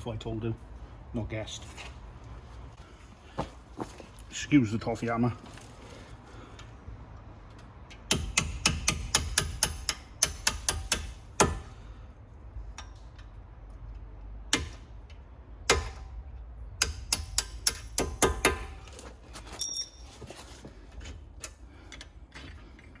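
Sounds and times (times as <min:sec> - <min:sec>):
hammer tapping on steel: 0:08.1 - 0:11.7.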